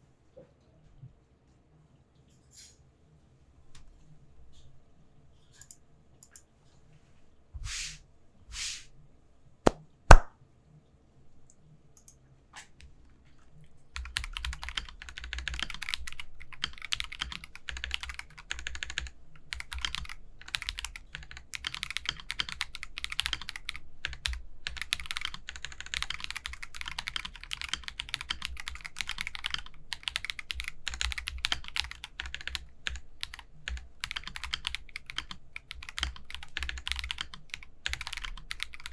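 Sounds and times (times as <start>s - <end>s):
mechanical keyboard typing: 14.0s - 38.9s.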